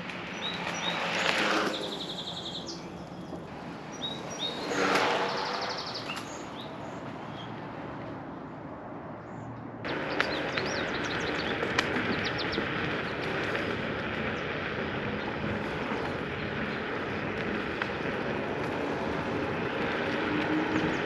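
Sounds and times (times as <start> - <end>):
birds chirping: 0.0 - 8.1, 9.1 - 21.0
tyre rolling noise: 9.9 - 21.0
wind on microphone: 9.9 - 21.0.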